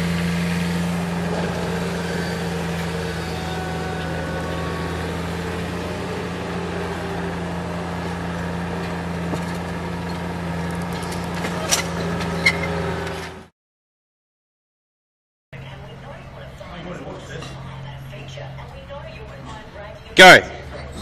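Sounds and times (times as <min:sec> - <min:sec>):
heavy machine engine running: 0:00.0 - 0:13.5.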